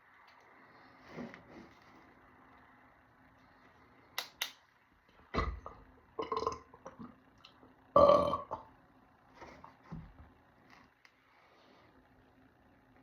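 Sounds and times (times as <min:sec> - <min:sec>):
man belching: 0:05.6 - 0:07.1, 0:08.0 - 0:08.7.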